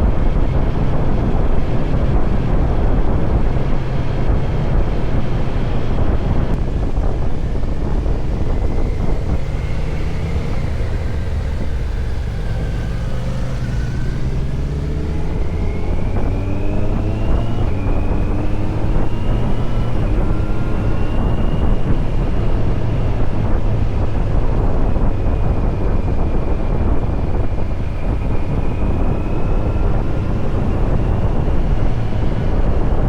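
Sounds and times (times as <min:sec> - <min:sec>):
motorcycle engine revving: 0:00.0 - 0:33.0
wind on microphone: 0:00.0 - 0:33.0.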